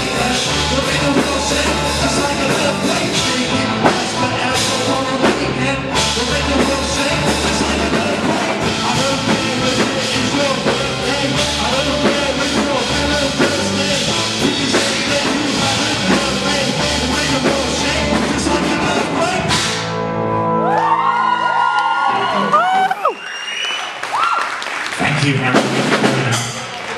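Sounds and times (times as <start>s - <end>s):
drum kit playing: 0.0s - 20.6s, 25.1s - 26.9s
rock song with singing: 0.0s - 21.3s.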